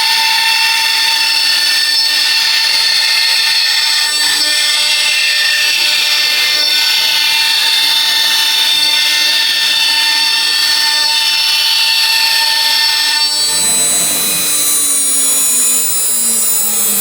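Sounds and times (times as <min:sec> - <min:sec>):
router spindle whine: 0:00.0 - 0:17.0
low hum falling in pitch: 0:13.4 - 0:17.0.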